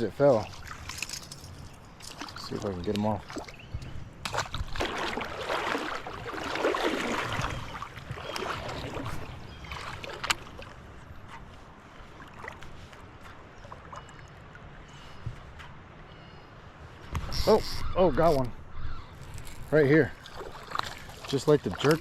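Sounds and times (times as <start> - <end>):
fish splashing in water: 4.2 - 10.8, 20.2 - 22.0.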